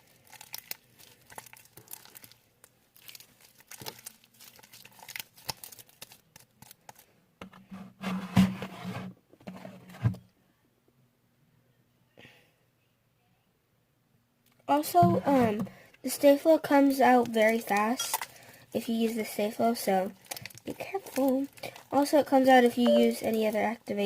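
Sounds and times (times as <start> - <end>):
slime wet clicks and crackles: 0.0 - 2.4, 3.0 - 7.0, 20.2 - 21.9.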